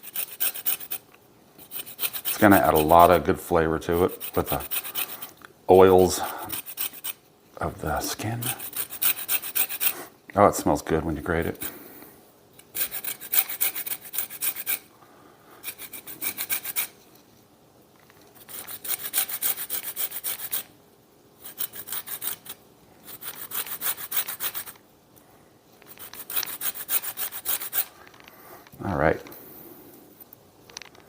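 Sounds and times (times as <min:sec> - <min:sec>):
lime peel scraping on grater: 0:00.0 - 0:01.0, 0:01.6 - 0:03.2, 0:03.8 - 0:05.3, 0:06.1 - 0:07.2, 0:08.3 - 0:10.1, 0:12.7 - 0:14.8, 0:15.6 - 0:17.0, 0:18.4 - 0:20.7, 0:21.4 - 0:24.8, 0:25.8 - 0:27.9.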